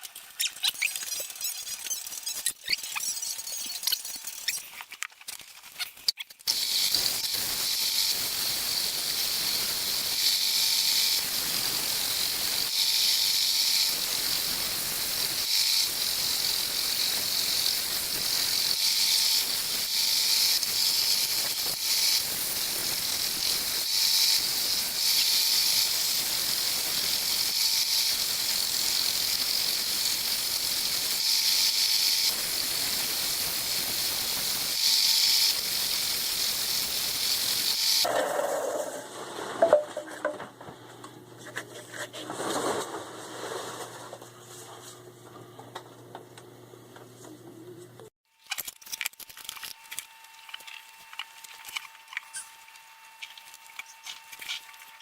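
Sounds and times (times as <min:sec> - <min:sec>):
scroll saw cutting wood: 0:05.7 - 0:39.8, 0:49.2 - 0:55.0.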